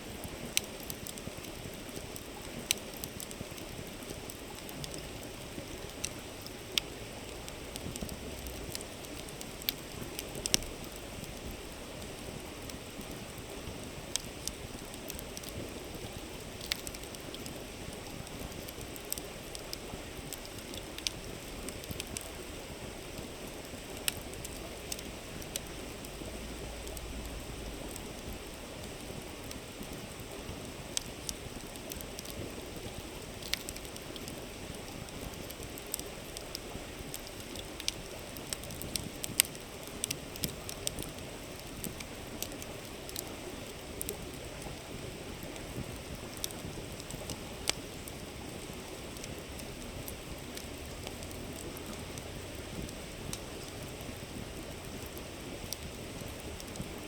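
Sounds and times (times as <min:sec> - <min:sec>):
campfire crackling and popping: 0:00.0 - 0:57.0.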